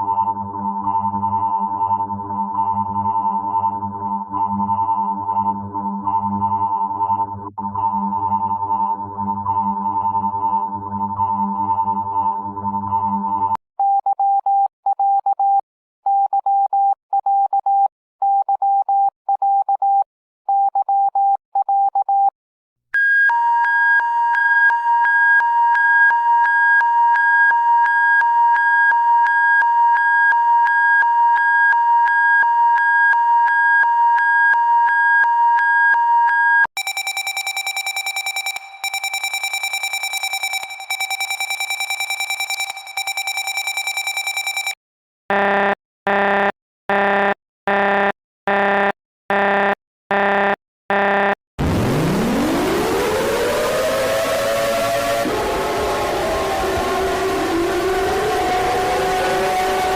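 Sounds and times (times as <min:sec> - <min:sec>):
electronic emergency alert tones: 0:36.8 - 0:44.8.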